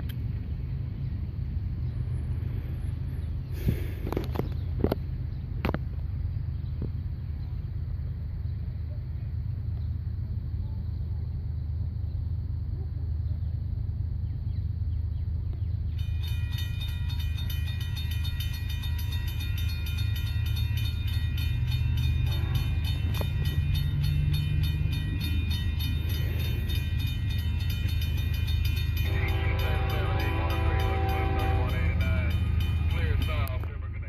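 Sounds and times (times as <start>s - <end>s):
locomotive rumble: 0.0s - 34.0s
high metallic ringing: 16.0s - 33.8s
train wheels clattering: 16.0s - 33.8s
pitched horn chord: 28.7s - 33.7s.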